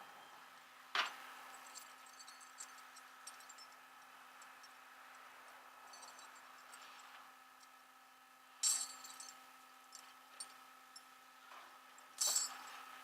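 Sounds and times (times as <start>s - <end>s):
sharp clinks: 8.6s - 9.4s.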